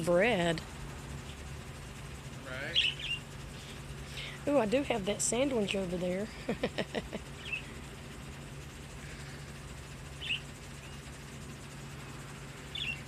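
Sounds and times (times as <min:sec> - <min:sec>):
birds giving short high calls: 0:02.6 - 0:03.4, 0:07.4 - 0:07.8, 0:10.1 - 0:11.1, 0:12.6 - 0:13.0.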